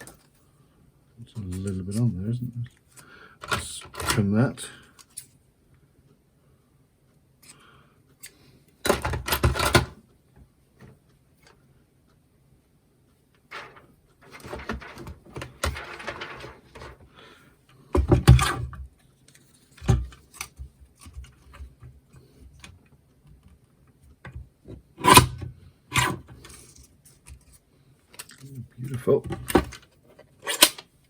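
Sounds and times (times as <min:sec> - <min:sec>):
paper rustling and scraping: 0:13.5 - 0:17.0.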